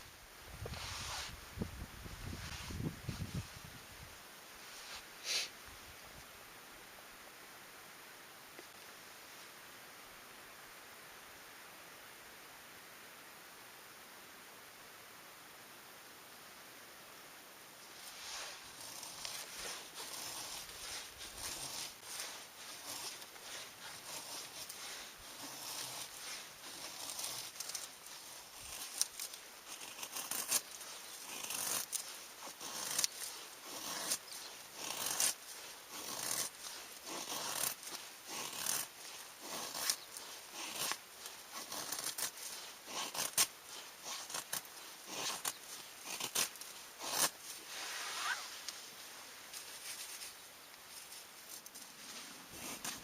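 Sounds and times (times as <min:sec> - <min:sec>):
rustling of handling: 0:17.8 - 0:53.0.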